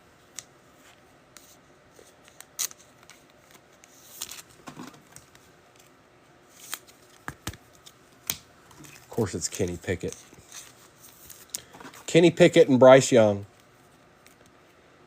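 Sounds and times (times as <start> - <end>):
cards sliding: 6.5 - 12.1.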